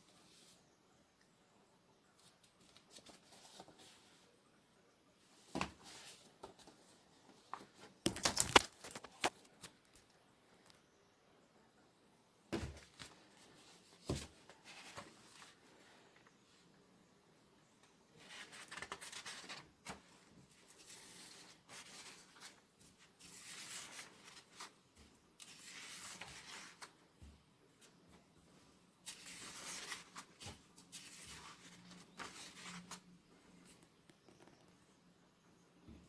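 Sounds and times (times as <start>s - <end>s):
paper and plastic rustling: 2.2s - 4.2s, 5.4s - 10.0s, 12.6s - 16.3s, 18.2s - 27.0s, 29.0s - 33.8s.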